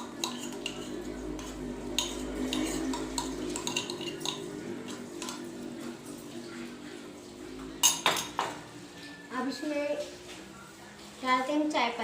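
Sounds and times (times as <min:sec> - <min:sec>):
metal spoon clinking in pan: 0:00.0 - 0:04.5
low hum: 0:00.0 - 0:10.9.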